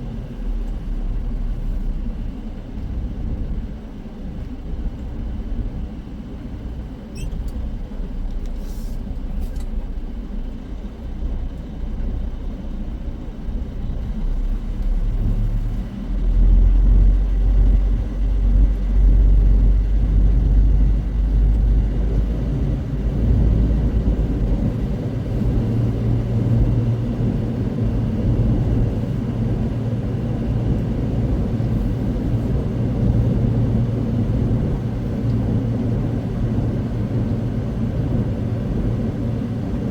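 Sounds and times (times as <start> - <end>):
diesel truck engine rumble: 0.0 - 39.9.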